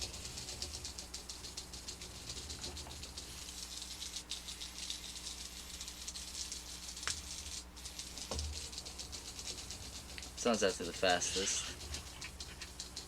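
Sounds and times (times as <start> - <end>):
toy robot motor rattling: 0.0 - 13.0
knocks: 8.3 - 8.7.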